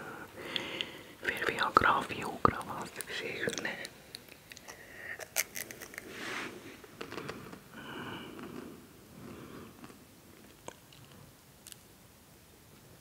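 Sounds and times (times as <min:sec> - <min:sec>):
soft mouth clicks: 0:00.5 - 0:06.0, 0:09.8 - 0:11.9
biting and chewing snack: 0:03.5 - 0:06.1.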